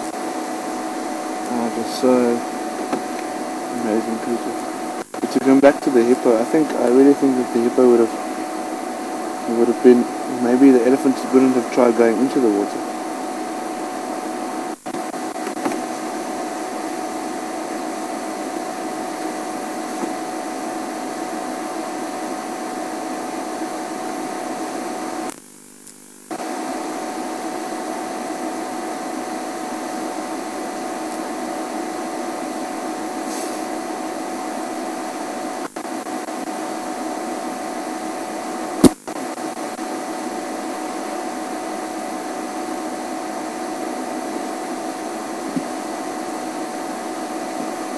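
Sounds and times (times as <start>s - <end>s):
faint steady hum: 0.0s - 47.9s
sharp click: 38.8s - 39.1s.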